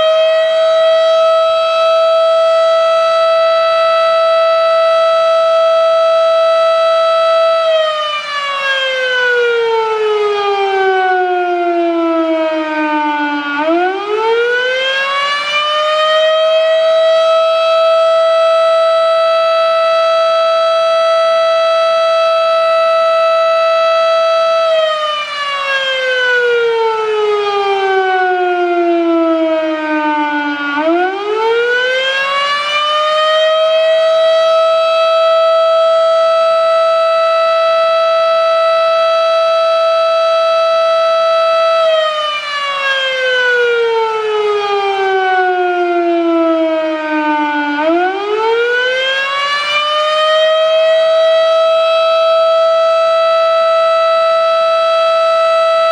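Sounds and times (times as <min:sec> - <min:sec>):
warning siren rising and falling: 0:00.0 - 0:55.9.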